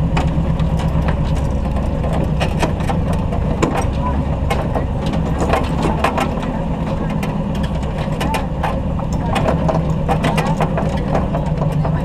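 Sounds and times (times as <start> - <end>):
truck engine at low revs: 0.0 - 12.0
clicks knocks and rattles: 0.2 - 12.0.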